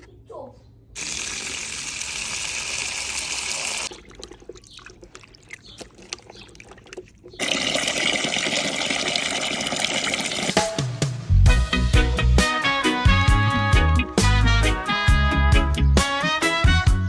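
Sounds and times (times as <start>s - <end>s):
water running: 1.0s - 10.7s.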